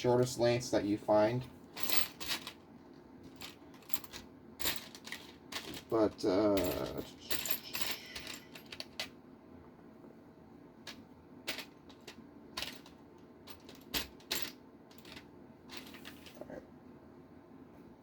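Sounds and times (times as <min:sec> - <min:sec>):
small metal screws clinking: 0:03.3 - 0:09.1.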